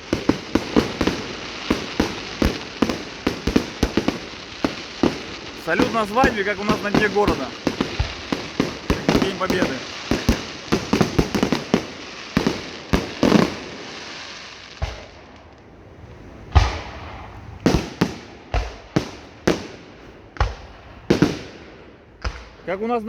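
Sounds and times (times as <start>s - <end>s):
fireworks bangs: 0.0s - 23.0s.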